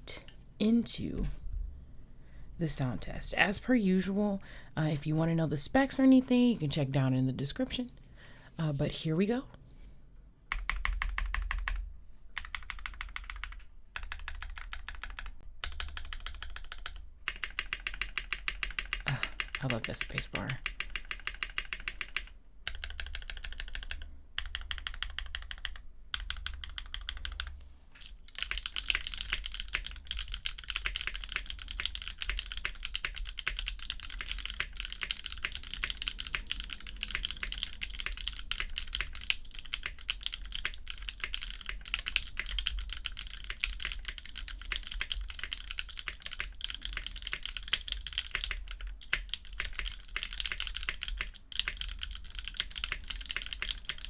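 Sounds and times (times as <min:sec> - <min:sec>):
mechanical keyboard typing: 0:10.5 - 0:11.8, 0:12.4 - 0:54.0.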